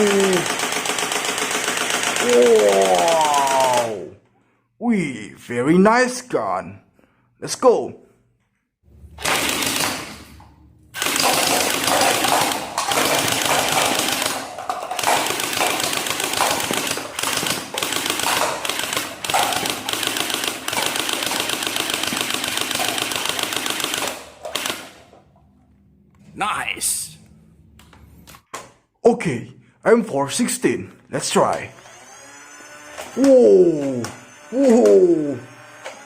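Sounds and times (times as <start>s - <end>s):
toy gun rapid rattling: 0.0s - 4.1s, 9.2s - 10.4s, 11.0s - 25.2s.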